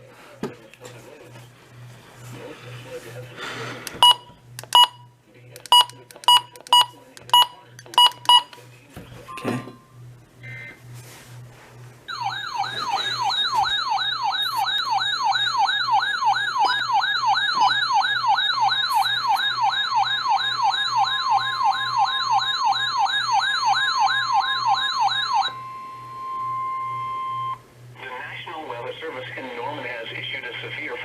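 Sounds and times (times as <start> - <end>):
steady alarm tone: 12.1 - 27.6
warbling alert siren: 12.1 - 27.6.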